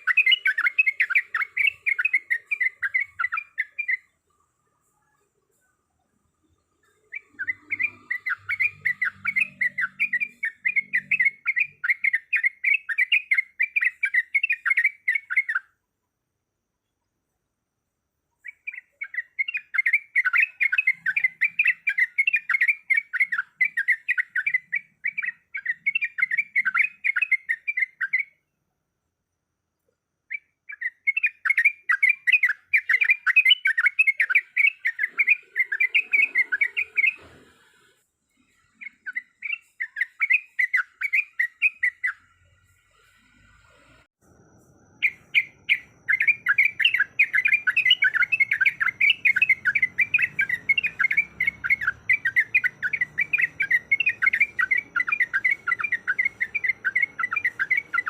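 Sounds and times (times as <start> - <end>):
bird chattering song: 0.0 - 5.7, 6.4 - 15.8, 18.4 - 28.4, 30.3 - 37.4, 38.4 - 43.1, 45.0 - 58.0.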